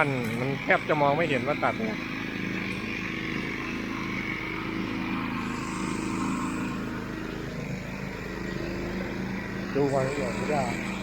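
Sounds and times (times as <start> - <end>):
ride-on lawn mower engine running: 0.0 - 11.0.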